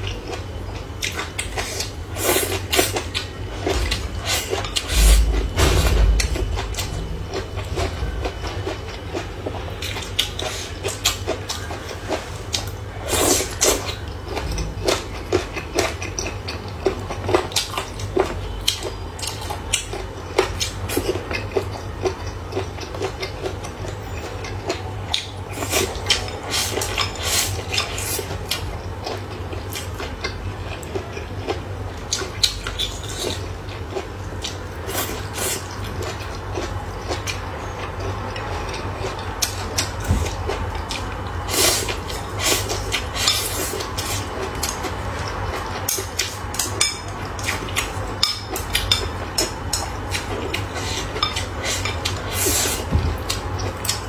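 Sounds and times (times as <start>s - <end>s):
low hum: 3.4s - 10.2s.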